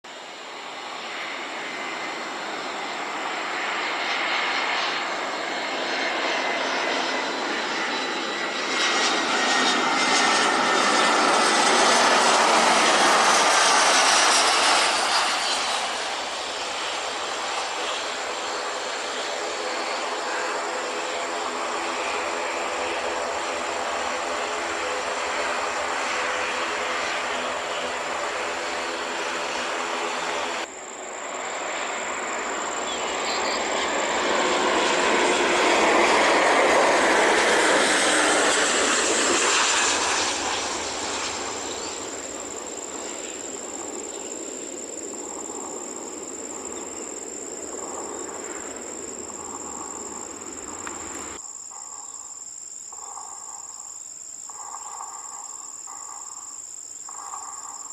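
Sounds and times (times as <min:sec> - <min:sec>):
jet engine drone: 0:00.0 - 0:57.9
jet passing with falling whine: 0:00.1 - 0:53.9
high insect buzz: 0:19.0 - 0:36.4, 0:39.4 - 0:57.9.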